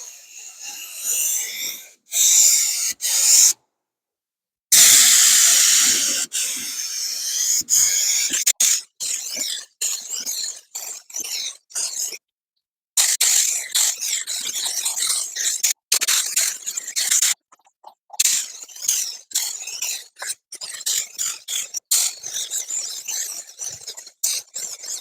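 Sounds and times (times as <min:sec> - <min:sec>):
spray gun hissing in bursts: 0:04.8 - 0:06.5.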